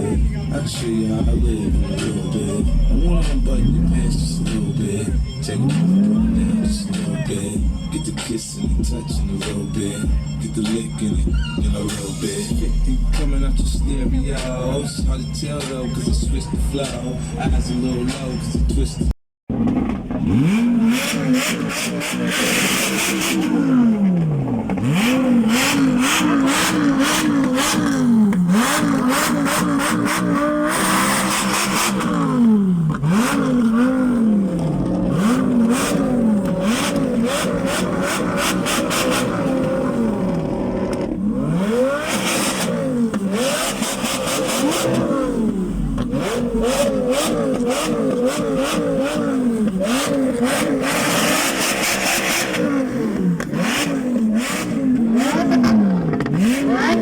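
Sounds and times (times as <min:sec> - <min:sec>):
car engine revving: 0:00.0 - 0:57.0
exhaust pops: 0:19.5 - 0:20.7, 0:23.0 - 0:57.0.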